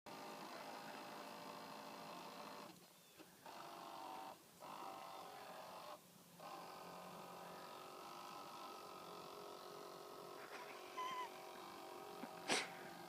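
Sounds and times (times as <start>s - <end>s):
toy boat motor whining: 3.4s - 13.0s.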